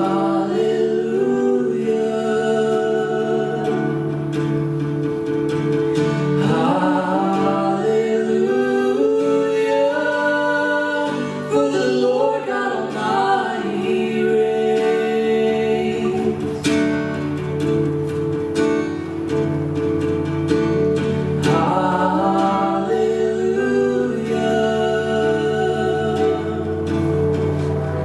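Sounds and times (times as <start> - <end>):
person singing: 0.0 - 4.6, 6.3 - 17.8, 21.4 - 28.0
acoustic guitar: 0.0 - 28.0.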